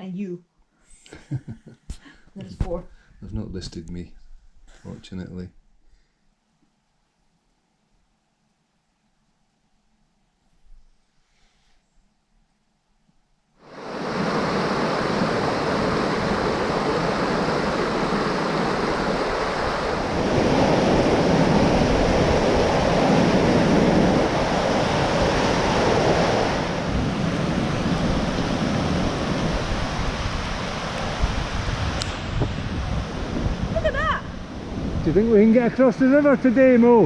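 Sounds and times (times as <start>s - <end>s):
wind and rain rushing: 13.6s - 37.0s
wind buffeting microphone: 13.7s - 37.0s.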